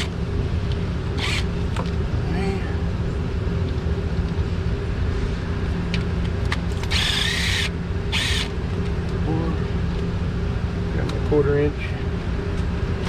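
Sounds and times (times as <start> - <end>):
steady low hum: 0.0 - 13.0
power tool whining: 1.1 - 1.8, 6.7 - 8.6.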